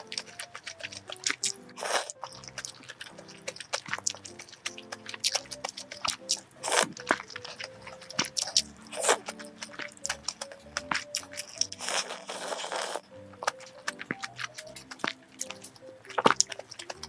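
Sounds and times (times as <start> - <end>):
person chewing food: 0.0 - 17.0
soft background music: 0.0 - 17.0.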